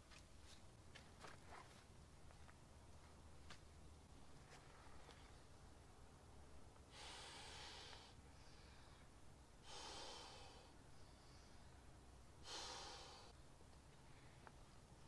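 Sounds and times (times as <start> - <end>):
person breathing: 6.9 - 13.4.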